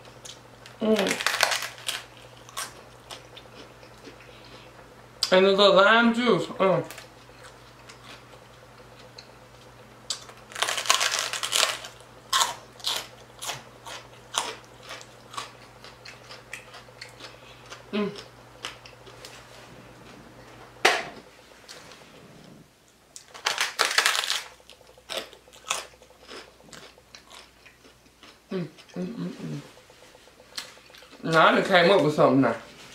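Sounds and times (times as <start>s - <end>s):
crunchy biting and chewing: 0.0s - 5.3s, 6.9s - 19.4s, 23.2s - 31.4s.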